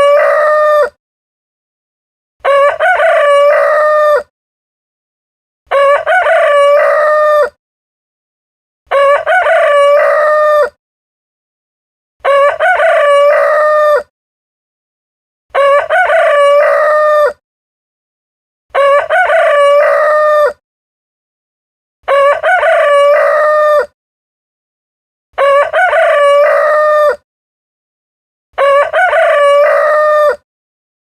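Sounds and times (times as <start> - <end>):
rooster crowing: 0.0 - 0.9, 2.4 - 4.3, 5.7 - 7.6, 8.9 - 10.8, 12.2 - 14.1, 15.6 - 17.4, 18.8 - 20.6, 22.1 - 23.9, 25.4 - 27.2, 28.6 - 30.4.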